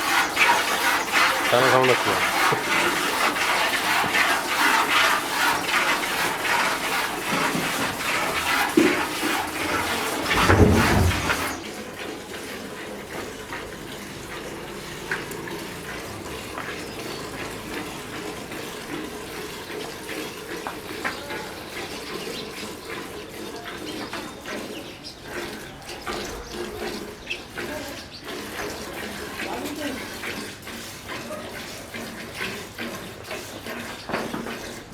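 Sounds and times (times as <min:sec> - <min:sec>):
milk squirting into a pail: 0:00.0 - 0:34.9.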